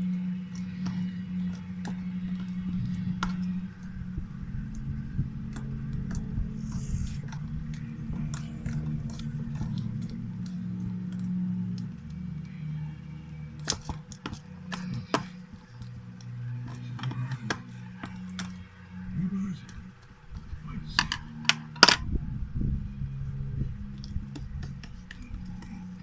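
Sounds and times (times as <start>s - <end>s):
low hum: 0.0s - 26.0s
slime squishing with clicks: 13.4s - 18.7s.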